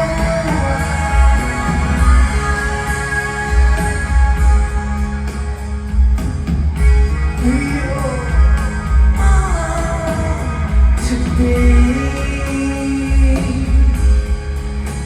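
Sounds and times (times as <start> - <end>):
lead vocal singing: 0.0 - 6.0, 6.8 - 15.0
rock band playing live: 0.0 - 15.0.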